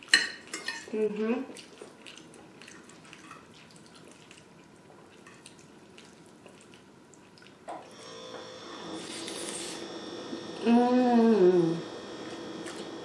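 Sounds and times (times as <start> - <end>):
wet chewing and mouth clicks: 1.5 - 7.8.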